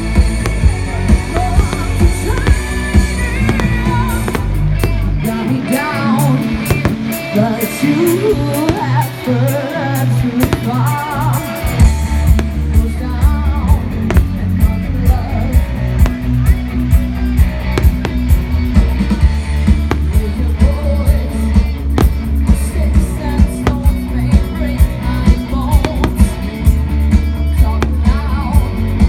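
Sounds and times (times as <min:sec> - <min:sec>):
loud rock music: 0:00.0 - 0:29.0
sharp bangs: 0:06.6 - 0:07.4, 0:14.0 - 0:14.6.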